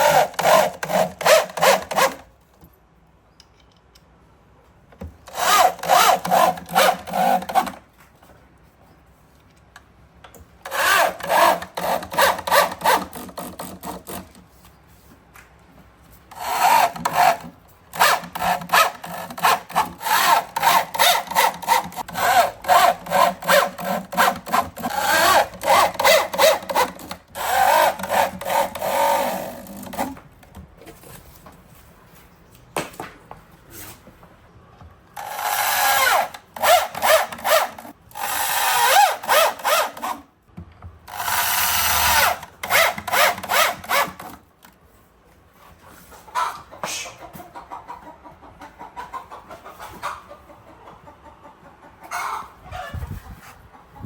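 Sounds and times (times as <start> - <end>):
saw rasping on wood: 0.0 - 2.2, 5.3 - 7.8, 10.7 - 14.4, 16.3 - 30.1.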